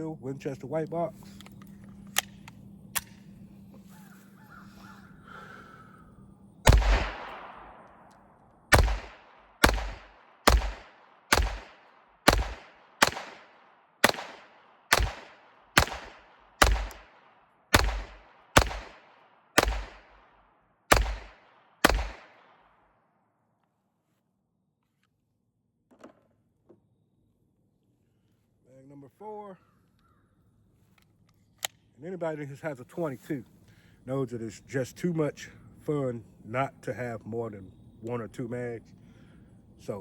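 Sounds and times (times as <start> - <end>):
pistol shots with echo: 6.6 - 20.3, 20.9 - 22.8.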